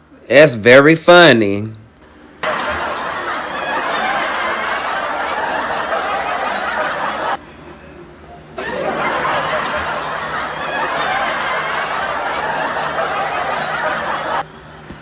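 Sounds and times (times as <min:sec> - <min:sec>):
laughter: 0:02.4 - 0:07.4, 0:08.6 - 0:14.4.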